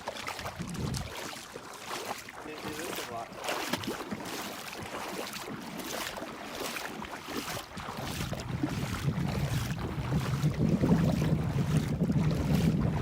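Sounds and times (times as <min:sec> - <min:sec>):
water splashing around kayak: 0:00.0 - 0:13.0
wind rumbling on microphone: 0:00.2 - 0:01.4, 0:07.4 - 0:13.0.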